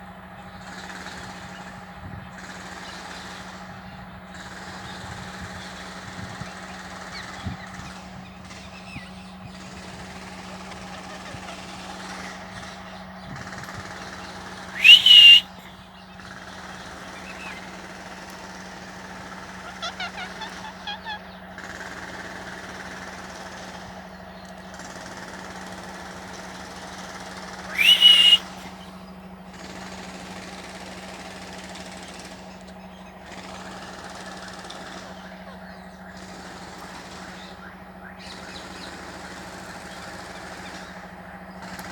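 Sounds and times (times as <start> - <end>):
parakeet shrill calls: 14.8 - 15.5, 27.8 - 28.4
quiet bird chirps: 14.8 - 15.5, 27.8 - 28.4.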